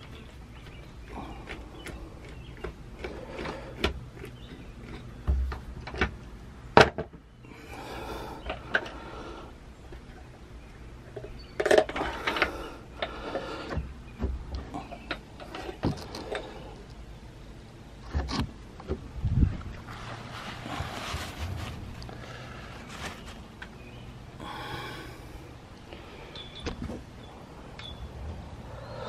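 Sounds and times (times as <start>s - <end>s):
scraping and rubbing: 19.5s - 23.6s.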